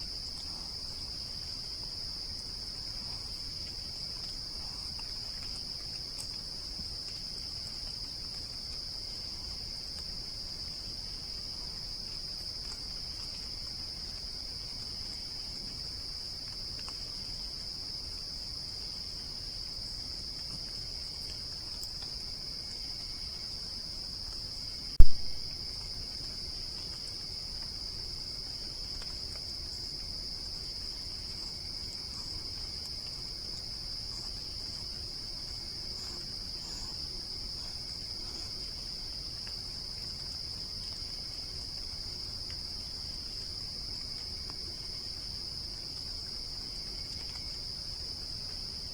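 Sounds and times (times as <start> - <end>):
crickets chirping at night: 0.0 - 48.9
sharp loud click: 25.0 - 25.4.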